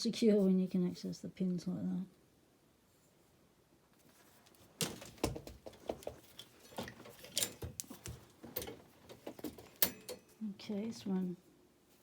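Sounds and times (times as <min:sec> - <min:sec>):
metal bike locks clinking: 0:09.7 - 0:10.3.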